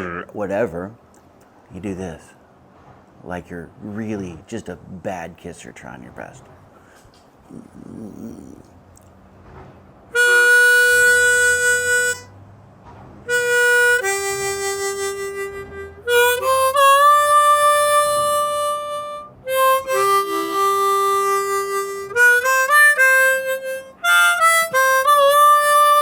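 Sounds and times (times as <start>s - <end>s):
harmonica playing: 0.0s - 0.7s, 10.2s - 12.4s, 13.3s - 26.0s.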